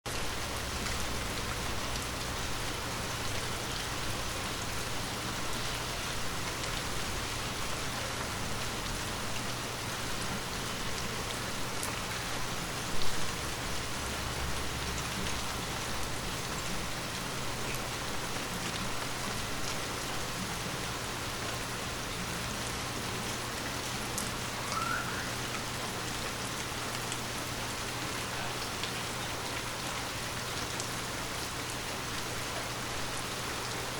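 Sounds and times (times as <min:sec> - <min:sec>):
light rain falling: 0:00.1 - 0:33.9
faint rising chirp: 0:24.6 - 0:25.4.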